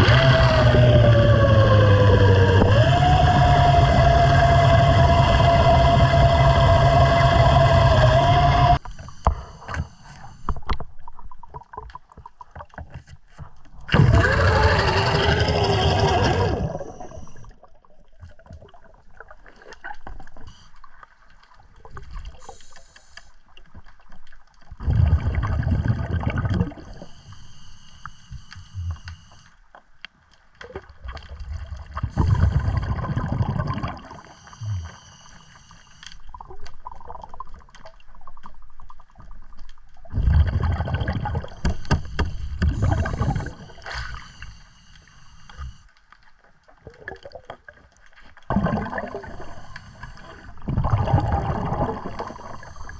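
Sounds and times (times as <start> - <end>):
air bubbling through water: 13.9 - 17.6, 24.8 - 27.0, 31.5 - 34.9, 40.1 - 44.4, 48.5 - 52.9.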